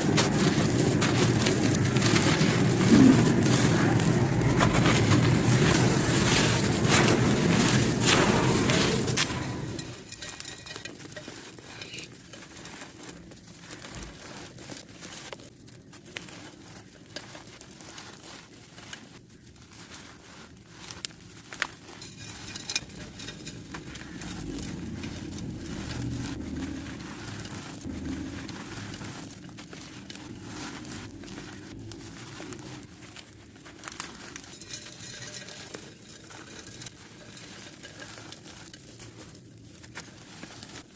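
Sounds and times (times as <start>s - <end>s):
loud rushing noise: 0.0s - 10.1s
dry chunks crushed and crumbling: 0.0s - 40.9s.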